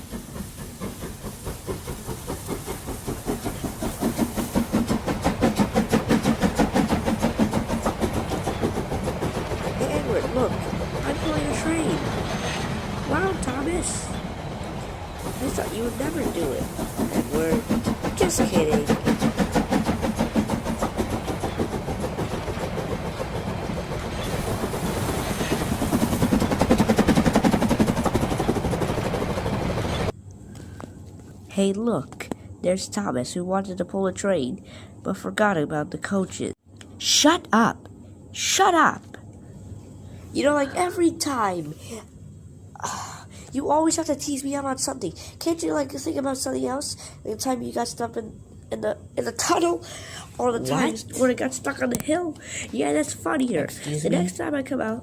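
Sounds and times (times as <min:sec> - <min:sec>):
toy train motor humming: 0:00.0 - 0:14.2, 0:15.2 - 0:30.1
toy train clicking on track: 0:15.3 - 0:22.8.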